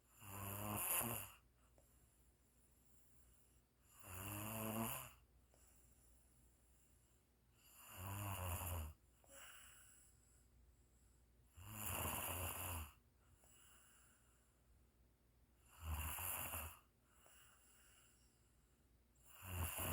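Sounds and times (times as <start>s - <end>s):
quiet breaths: 0.0s - 19.9s
person snoring: 0.2s - 1.4s, 3.9s - 5.2s, 11.6s - 13.0s, 15.7s - 16.8s, 19.3s - 19.9s.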